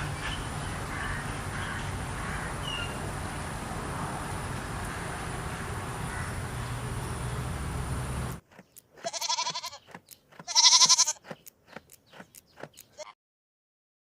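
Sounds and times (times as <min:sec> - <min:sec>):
steady background noise: 0:00.0 - 0:12.9
goat bleating: 0:09.0 - 0:11.3, 0:12.7 - 0:13.2.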